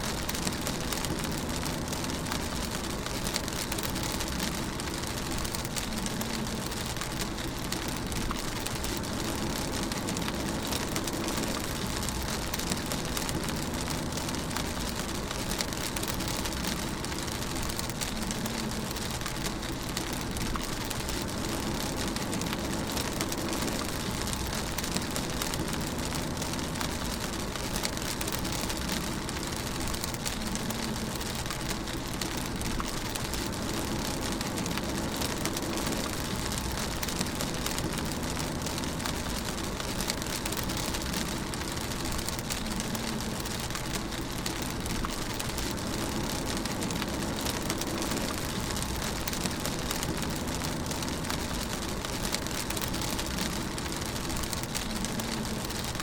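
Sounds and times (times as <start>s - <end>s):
rain on a car: 0.0s - 56.0s.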